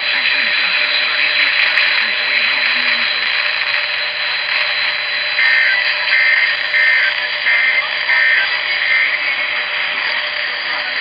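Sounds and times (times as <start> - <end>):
radio static hiss: 1.3 - 11.0
warbling two-tone data bursts: 3.8 - 7.8.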